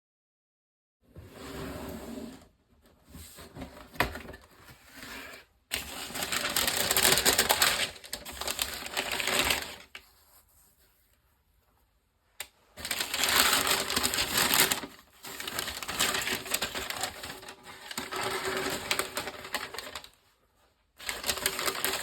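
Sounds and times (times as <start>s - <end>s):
paper packaging rustling: 3.2s - 11.0s, 12.4s - 20.3s, 20.9s - 22.0s.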